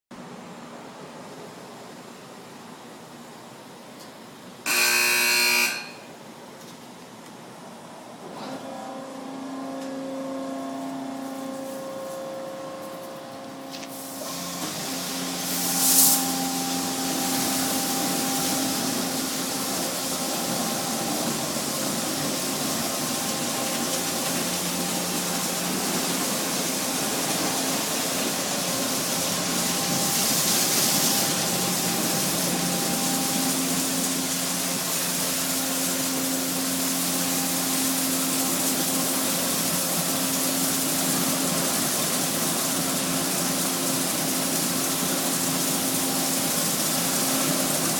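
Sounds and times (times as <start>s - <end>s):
low motor hum: 7.8s - 38.6s
water spraying: 13.7s - 47.9s.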